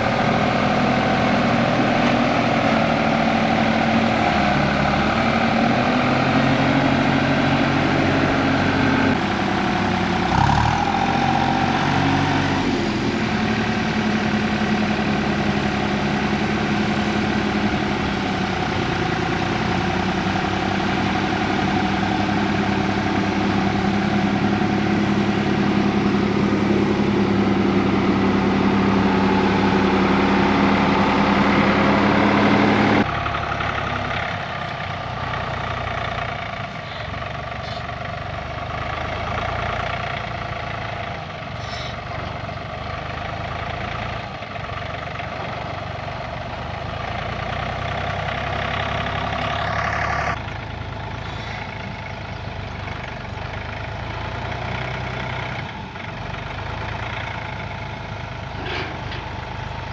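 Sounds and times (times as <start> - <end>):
tractor diesel engine running: 0.0 - 59.9
clunk: 58.6 - 59.4.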